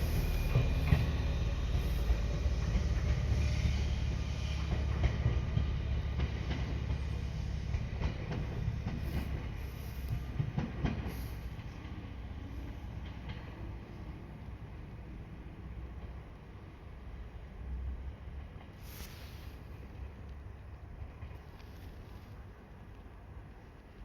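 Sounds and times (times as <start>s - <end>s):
train wheels clacking on rails: 0.0s - 16.7s.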